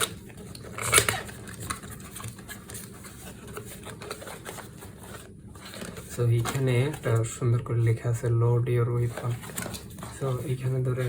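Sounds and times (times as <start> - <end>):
cardboard packaging rustling: 0.0 - 8.0, 8.9 - 11.0.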